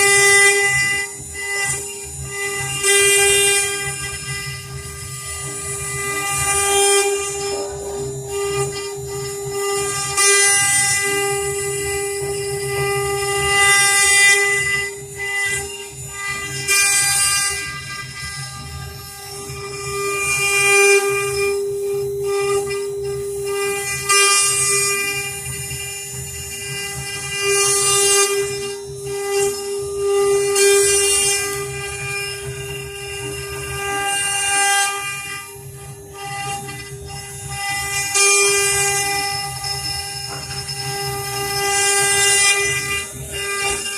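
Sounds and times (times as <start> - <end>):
router spindle whine: 0.0 - 43.9
low machine rumble: 6.6 - 10.1.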